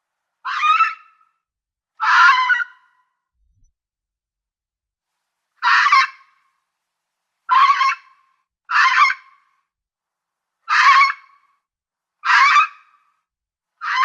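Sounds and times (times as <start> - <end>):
fox harsh raspy calls: 0.4 - 1.2, 2.0 - 3.0, 5.6 - 6.3, 7.5 - 9.4, 10.7 - 11.4, 12.2 - 13.0, 13.8 - 14.0.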